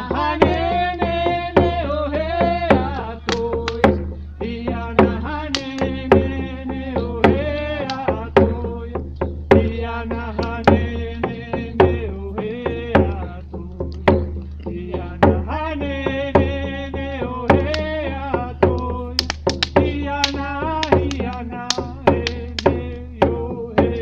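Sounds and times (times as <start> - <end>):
person chanting: 0.0 - 9.0, 9.6 - 24.0
drum beaten in steady rhythm: 0.0 - 24.0.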